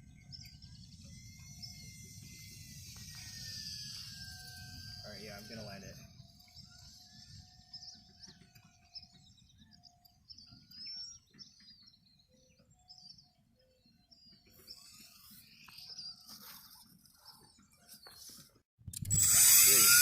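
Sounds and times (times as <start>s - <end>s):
faint bird chirps: 0.0s - 18.5s.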